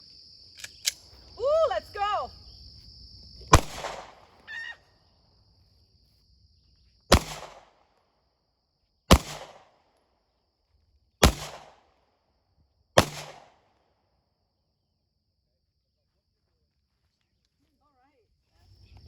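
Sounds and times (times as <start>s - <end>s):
pistol shots with echo: 3.5s - 4.4s, 7.1s - 7.8s, 9.1s - 9.8s, 11.2s - 11.9s, 13.0s - 13.7s.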